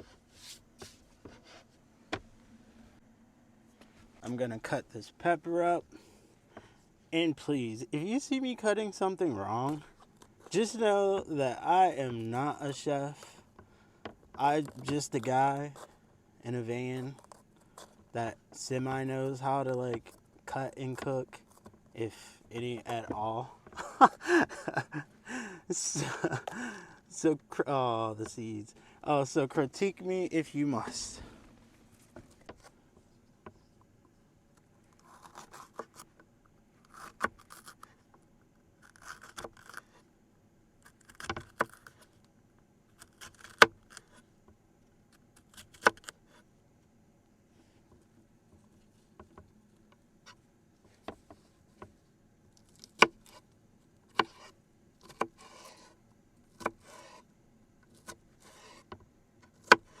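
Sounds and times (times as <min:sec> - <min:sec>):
knife cutting pepper: 0:35.0 - 0:36.1, 0:38.8 - 0:40.0, 0:43.0 - 0:44.2, 0:54.1 - 0:56.0, 0:56.6 - 0:57.3, 0:58.0 - 0:58.9.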